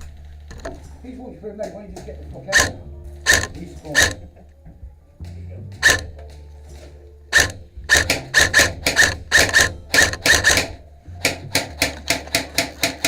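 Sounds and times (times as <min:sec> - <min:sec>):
airsoft rifle shots: 0:02.5 - 0:04.3, 0:05.8 - 0:06.2, 0:07.3 - 0:13.0.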